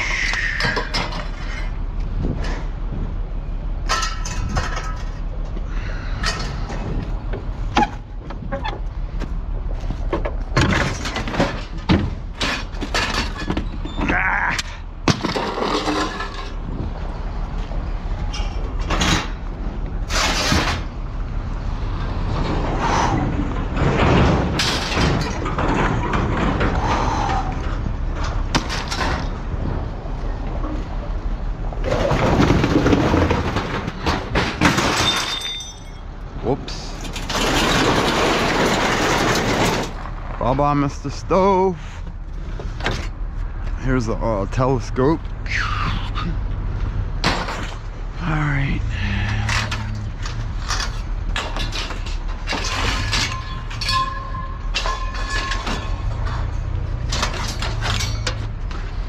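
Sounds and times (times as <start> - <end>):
scrap metal clanking onto pile: 3.8 - 5.3, 10.6 - 14.0, 15.1 - 16.6, 20.0 - 20.9, 23.7 - 27.0, 28.2 - 29.4, 31.8 - 36.0, 36.7 - 40.0, 49.2 - 58.9.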